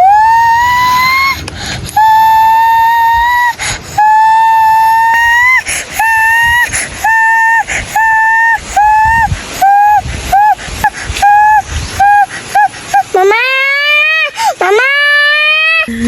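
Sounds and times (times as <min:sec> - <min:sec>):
whistle blowing long high notes: 0:13.0 - 0:16.0.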